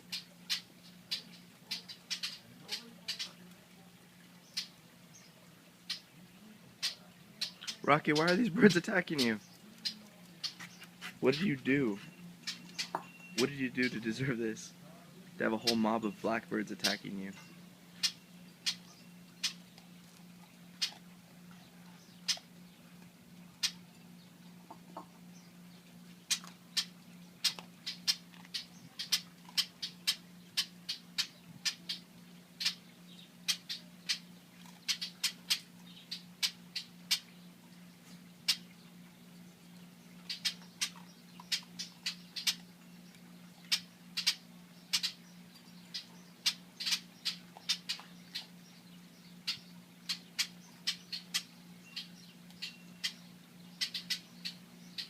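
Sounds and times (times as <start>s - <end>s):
blackbird alarm calls: 0.0s - 3.4s, 4.4s - 6.2s, 6.8s - 20.0s, 20.6s - 23.0s, 23.6s - 55.0s.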